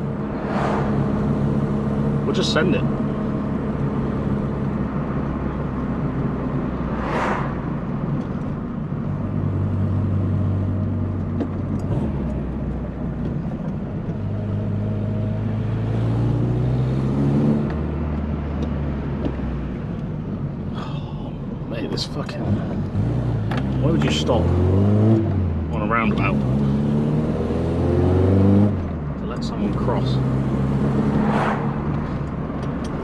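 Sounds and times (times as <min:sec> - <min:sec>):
car engine accelerating: 0:00.0 - 0:20.9, 0:21.8 - 0:33.0
brief whoosh: 0:06.7 - 0:08.2, 0:31.0 - 0:32.3.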